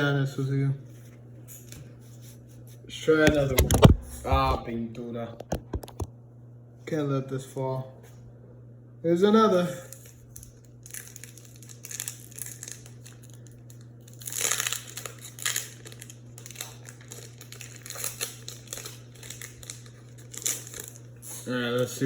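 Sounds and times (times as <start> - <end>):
low electrical hum: 0.0 - 22.0
foil wrapper tearing and crinkling: 9.9 - 22.0.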